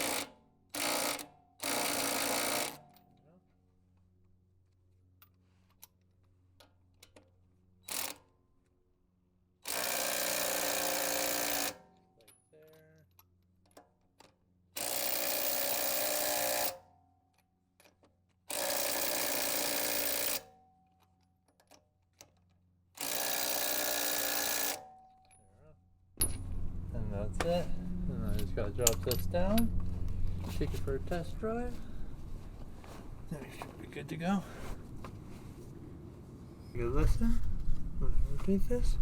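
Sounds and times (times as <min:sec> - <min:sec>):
impact wrench on lug nuts: 0:17.8 - 0:20.6, 0:21.5 - 0:25.4, 0:26.2 - 0:31.4.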